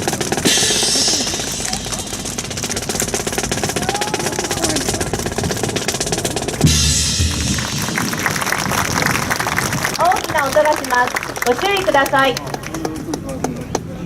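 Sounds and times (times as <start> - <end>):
snare drum roll: 0.0 - 10.6.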